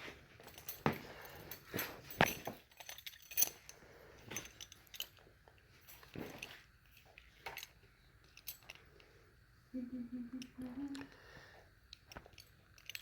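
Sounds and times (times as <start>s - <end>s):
rustling of items: 0.0s - 9.2s
light metallic clinks: 0.0s - 9.5s, 11.9s - 13.0s.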